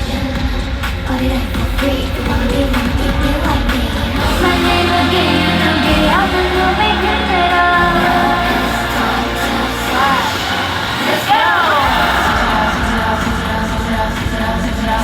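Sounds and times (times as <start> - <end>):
female vocals: 0.0 - 15.0
pop backing track with heavy bass: 0.0 - 15.0.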